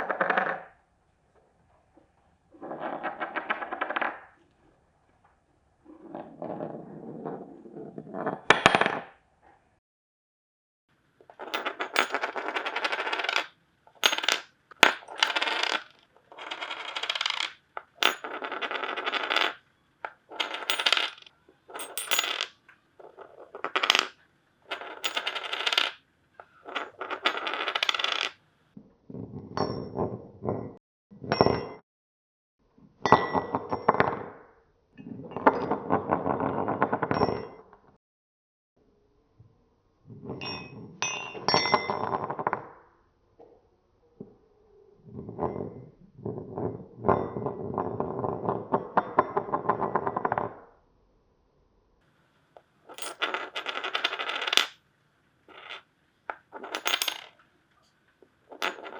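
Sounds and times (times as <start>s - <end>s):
metal ring spinning and rattling: 11.3s - 28.4s, 52.9s - 54.8s, 55.5s - 57.4s, 58.5s - 58.9s.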